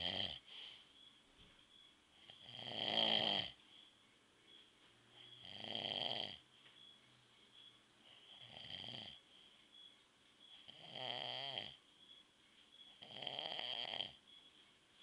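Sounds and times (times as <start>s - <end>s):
man snoring: 0.0s - 0.4s, 2.4s - 3.6s, 5.4s - 6.4s, 8.3s - 9.2s, 10.7s - 11.8s, 13.0s - 14.2s.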